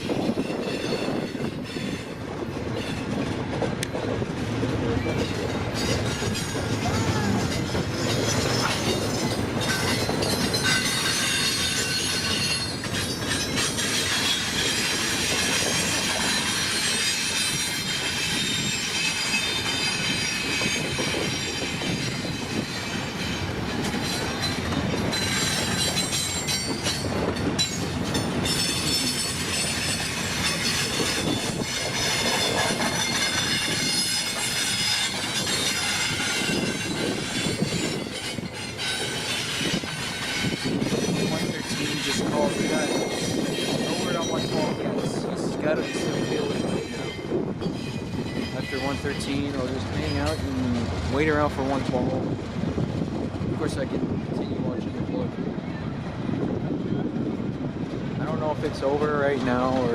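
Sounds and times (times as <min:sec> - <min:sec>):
train wheels clicking over rail joints: 0:00.0 - 0:53.8
high-pitched wheel squeal: 0:28.5 - 0:44.7.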